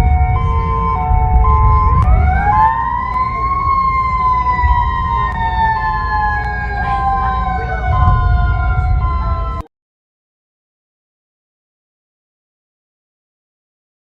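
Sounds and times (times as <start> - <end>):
low rumble: 0.0 - 9.7
siren wailing: 0.0 - 9.7.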